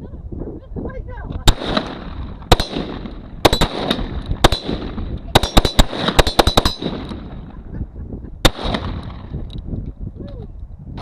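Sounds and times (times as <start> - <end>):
gunshots: 1.4 - 7.5, 8.4 - 9.3.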